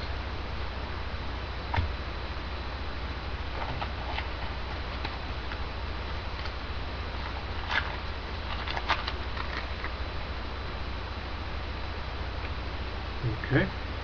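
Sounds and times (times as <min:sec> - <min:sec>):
electrical hum and hiss: 0:00.0 - 0:14.0
cards rustling and clicking: 0:07.2 - 0:09.9.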